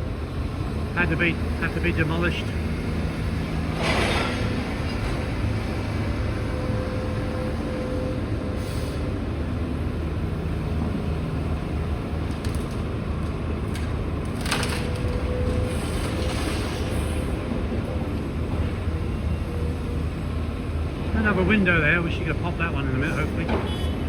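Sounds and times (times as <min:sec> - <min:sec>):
excavator engine rumble: 0:00.0 - 0:24.0
timber and masonry cracking: 0:12.2 - 0:16.6.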